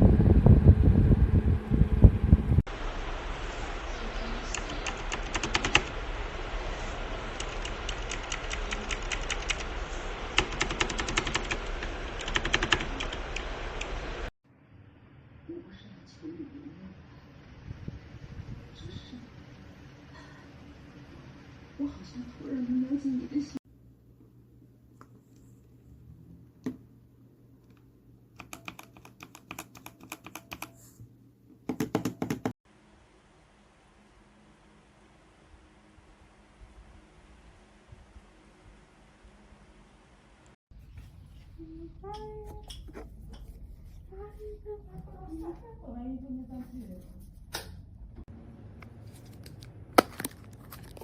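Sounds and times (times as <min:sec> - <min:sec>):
mechanical keyboard typing: 0:04.5 - 0:05.9, 0:07.4 - 0:09.7, 0:10.3 - 0:13.9, 0:28.4 - 0:30.8.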